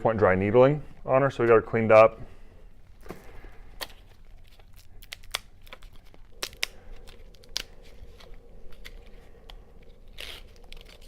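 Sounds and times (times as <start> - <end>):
packaging crinkling and tearing: 3.0 - 11.0
sharp clicks and snaps: 3.8 - 11.0.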